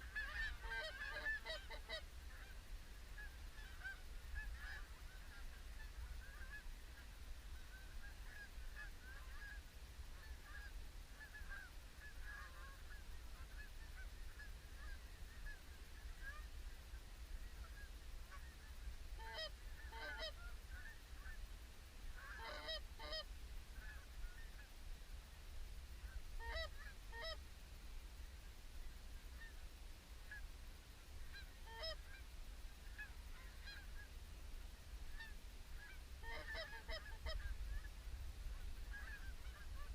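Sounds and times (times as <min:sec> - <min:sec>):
geese honking: 0:00.0 - 0:24.8, 0:26.0 - 0:27.4, 0:31.2 - 0:34.2, 0:35.1 - 0:39.9.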